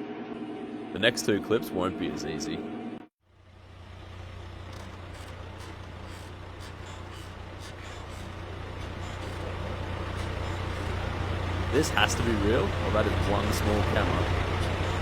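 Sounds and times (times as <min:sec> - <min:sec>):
vehicle engine droning: 0:03.2 - 0:15.0.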